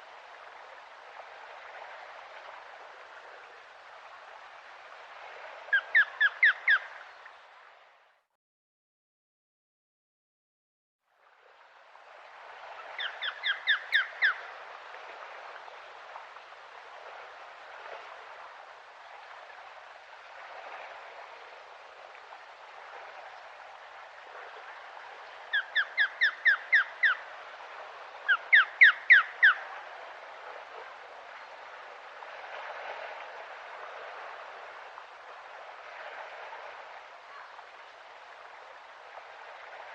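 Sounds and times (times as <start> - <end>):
osprey whistled calls: 5.7 - 7.0, 13.0 - 14.5, 25.5 - 27.2, 28.3 - 29.6.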